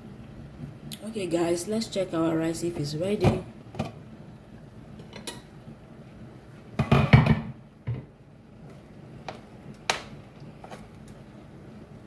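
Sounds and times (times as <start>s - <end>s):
cooking pot and utensils clattering: 5.0s - 5.5s.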